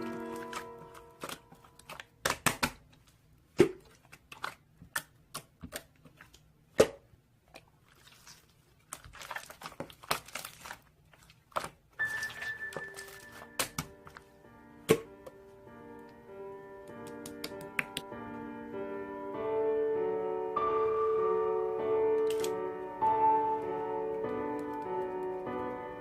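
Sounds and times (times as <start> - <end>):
crinkling and crackling: 0.0 - 6.6, 7.4 - 14.4.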